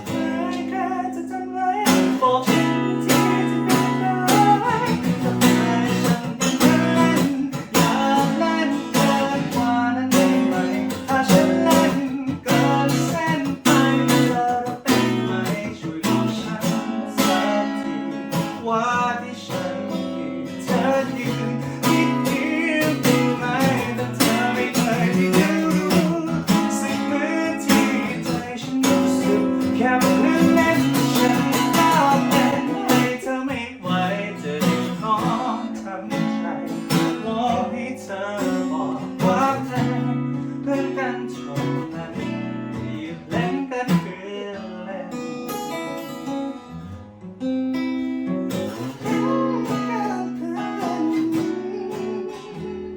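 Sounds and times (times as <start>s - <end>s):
acoustic guitar strumming and picking: 0.0s - 52.9s.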